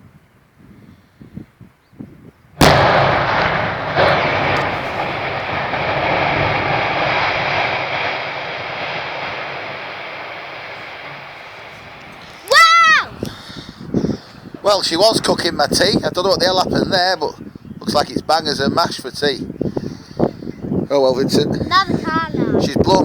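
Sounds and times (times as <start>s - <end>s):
explosive blasts: 2.6s - 17.0s
long demolition rumble: 2.6s - 17.2s.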